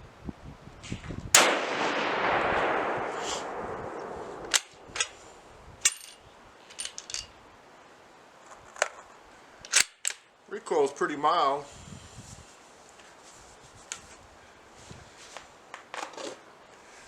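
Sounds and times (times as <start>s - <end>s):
rifle shot with echo: 1.4s - 5.3s
metallic clicks of rifle bolt: 4.4s - 5.2s, 9.6s - 10.2s.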